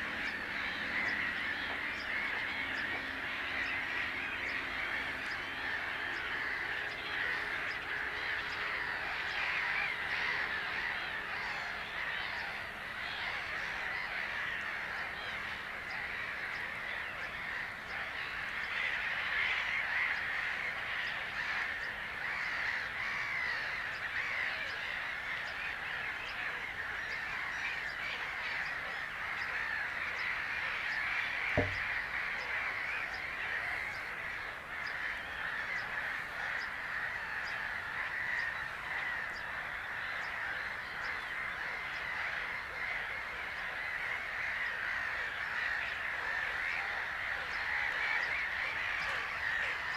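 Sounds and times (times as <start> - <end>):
many birds chattering: 0.0 - 49.9
low thump: 31.6 - 31.9.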